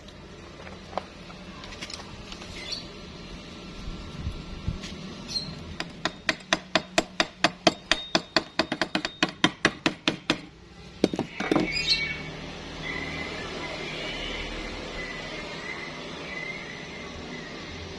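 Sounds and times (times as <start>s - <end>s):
hammer striking metal: 5.8s - 11.6s.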